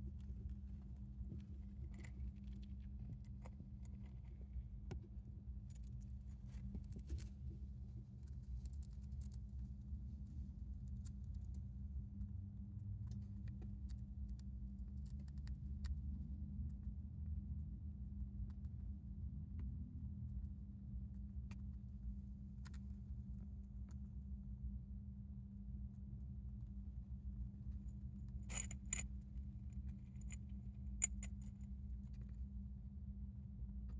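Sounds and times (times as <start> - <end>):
low hum: 19.6 - 33.9.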